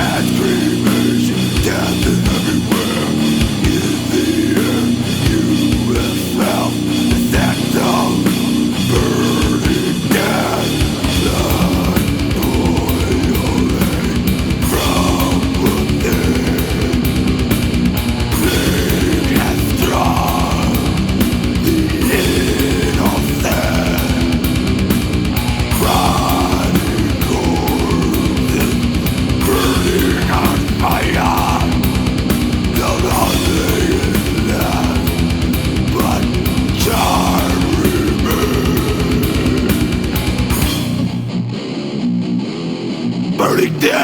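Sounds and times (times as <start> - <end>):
distorted electric guitars: 0.0 - 44.0
rapid bass drum hits: 9.1 - 41.1.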